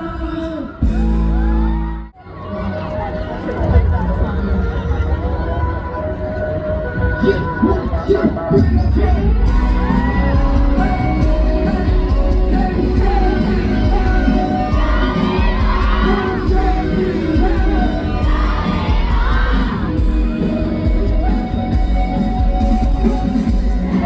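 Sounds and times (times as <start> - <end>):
live pop music with bass beat: 0.0 - 2.1, 6.7 - 24.0
audience whooping and shouting: 1.0 - 24.0
person singing: 7.0 - 21.6.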